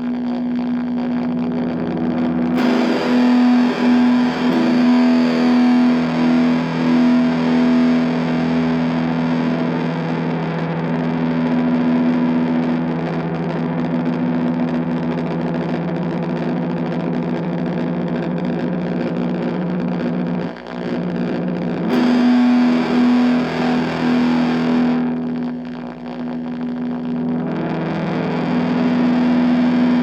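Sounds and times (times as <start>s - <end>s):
distorted electric guitar: 0.0s - 30.0s.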